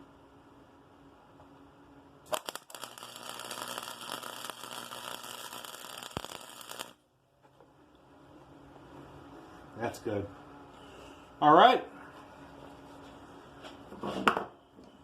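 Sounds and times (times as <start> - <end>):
welder arc crackling: 2.2 - 7.0.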